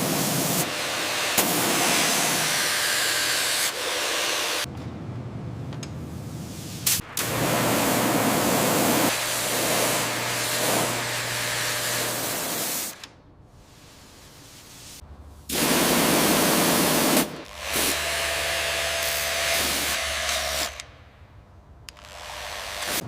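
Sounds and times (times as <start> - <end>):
hissing spray jet: 6.4 - 17.9.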